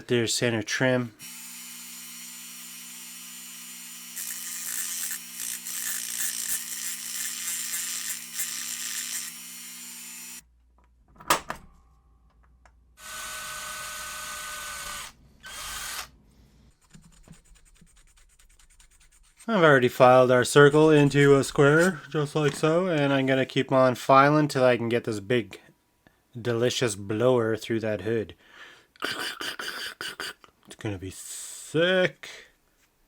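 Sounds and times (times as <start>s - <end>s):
rotary tool grinding metal: 1.2s - 10.4s
small power tool running: 1.2s - 10.4s, 13.0s - 16.1s.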